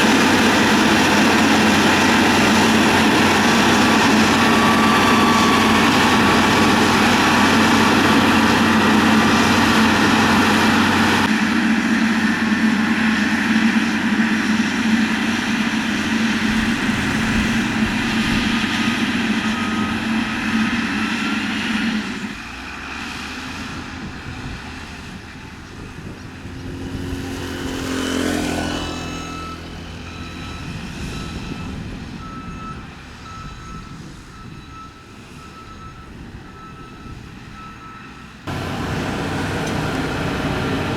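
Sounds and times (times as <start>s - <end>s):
diesel engine droning: 0.0s - 40.9s
reversing alarm beeping: 0.4s - 11.3s, 19.2s - 20.6s, 28.6s - 40.9s.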